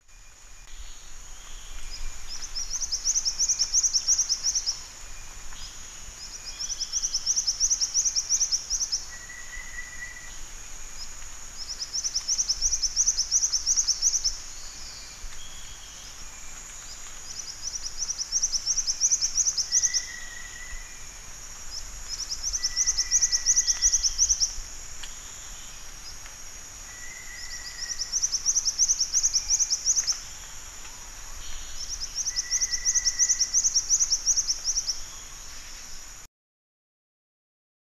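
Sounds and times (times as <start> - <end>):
steady high hiss: 0.0 - 36.3
bird singing rapid high trills: 31.6 - 35.1.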